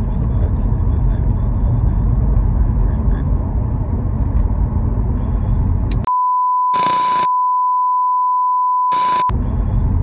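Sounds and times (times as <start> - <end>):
censor bleep: 6.0 - 9.3.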